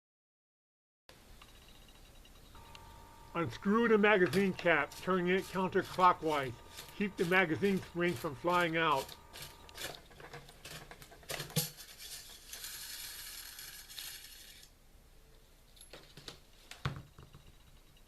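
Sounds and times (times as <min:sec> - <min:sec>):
metal scraping on metal: 0:03.5 - 0:14.7.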